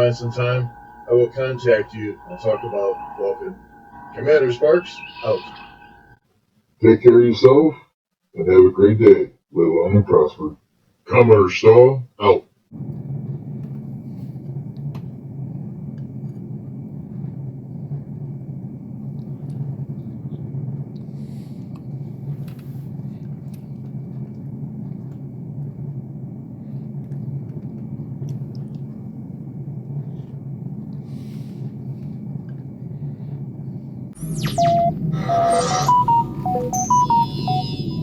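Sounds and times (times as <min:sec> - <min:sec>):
electronic sweep and beeping: 0:00.0 - 0:06.2, 0:34.2 - 0:38.0
low droning hum: 0:00.0 - 0:06.2, 0:34.2 - 0:38.0.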